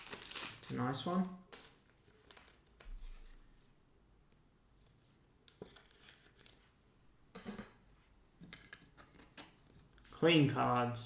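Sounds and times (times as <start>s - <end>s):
card wrappers rustling: 0.0s - 3.3s.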